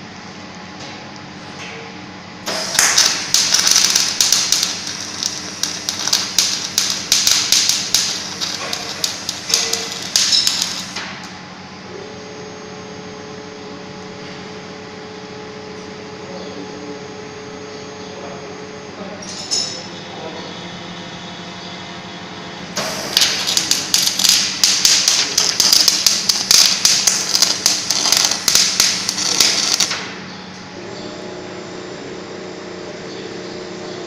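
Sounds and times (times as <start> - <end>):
steady machinery hum: 0.0 - 34.0
welding arc crackling: 2.5 - 11.1, 22.8 - 30.2.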